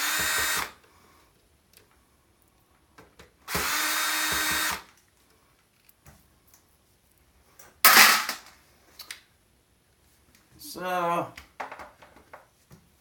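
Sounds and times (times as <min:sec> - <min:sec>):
power drill whining: 0:00.0 - 0:00.8, 0:03.5 - 0:04.9.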